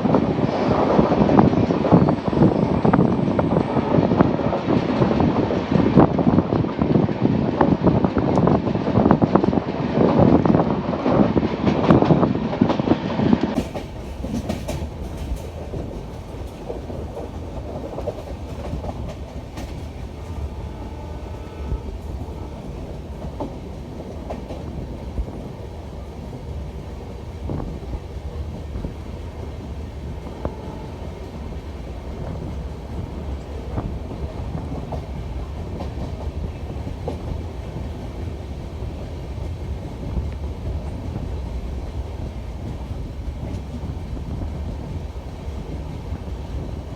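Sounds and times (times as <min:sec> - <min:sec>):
train rumbling on rails: 0:00.0 - 0:46.9.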